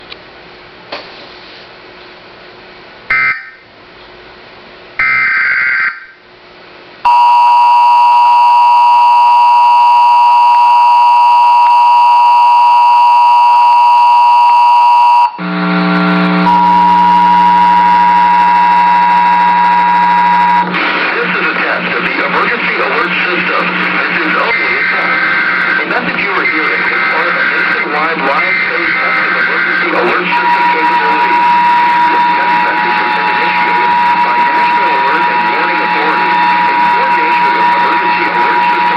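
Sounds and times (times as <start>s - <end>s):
low buzzy steady tone: 7.0s - 38.9s
two-tone attention signal: 7.1s - 20.8s, 22.2s - 38.9s
digital data bursts: 16.5s - 38.9s.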